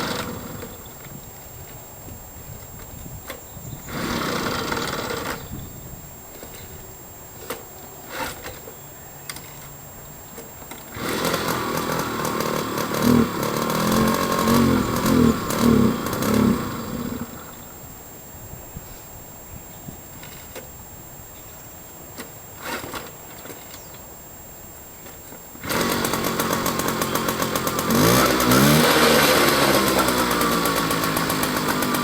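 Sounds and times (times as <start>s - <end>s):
motorcycle engine starting unevenly: 0.0s - 1.0s, 3.8s - 5.5s, 10.9s - 17.6s, 25.6s - 32.0s.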